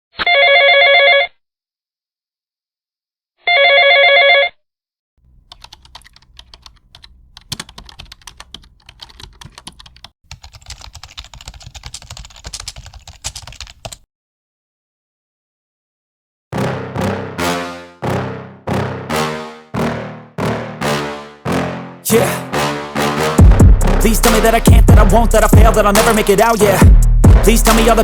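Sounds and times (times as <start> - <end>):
electronic phone ringtone: 0.3 - 1.4, 3.5 - 4.6
rapid clicks and taps: 5.3 - 14.0.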